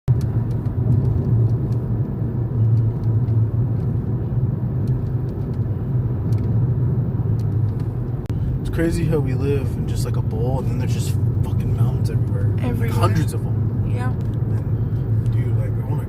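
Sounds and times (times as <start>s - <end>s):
car engine and road rumble: 0.1s - 16.0s.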